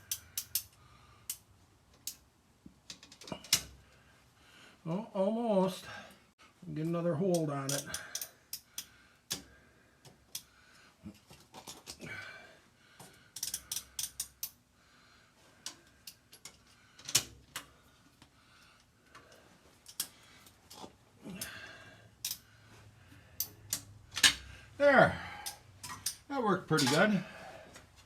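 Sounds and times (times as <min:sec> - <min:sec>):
small metallic clicks: 0:00.0 - 0:02.2, 0:02.8 - 0:03.8, 0:07.3 - 0:10.5, 0:13.3 - 0:14.6, 0:15.6 - 0:17.7, 0:18.6 - 0:21.6, 0:22.2 - 0:22.5, 0:23.4 - 0:24.5, 0:25.4 - 0:27.0.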